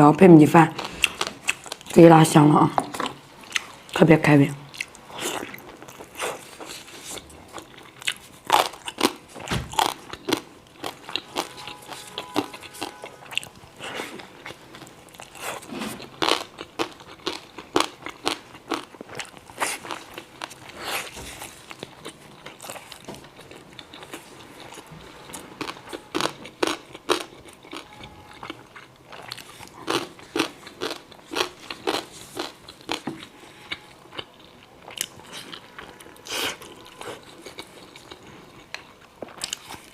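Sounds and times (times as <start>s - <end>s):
crunchy bites and chewing: 4.7s - 39.9s.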